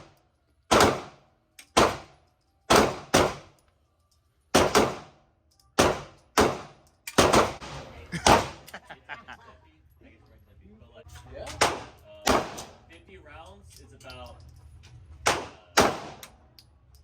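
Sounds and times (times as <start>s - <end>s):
gunshots with echo: 0.7s - 1.2s, 4.6s - 5.1s, 5.8s - 8.6s, 11.6s - 12.8s, 15.2s - 16.2s.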